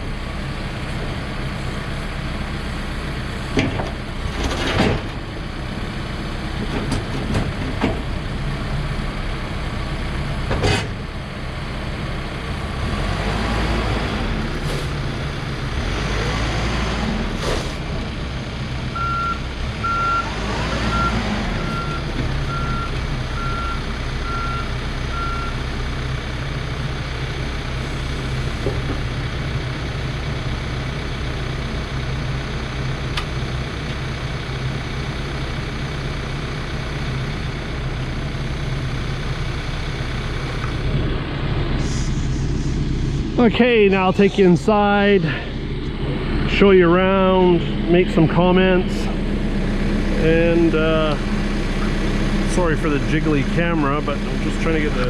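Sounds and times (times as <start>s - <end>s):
diesel engine labouring: 0.0s - 55.0s
reverse alarm beeping: 19.0s - 20.3s, 20.9s - 25.6s.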